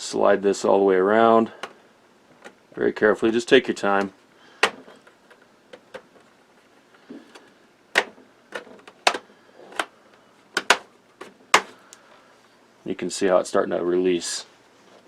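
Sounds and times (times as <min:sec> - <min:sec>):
plastic clips clicking and snapping: 0:07.2 - 0:09.9, 0:10.6 - 0:11.8.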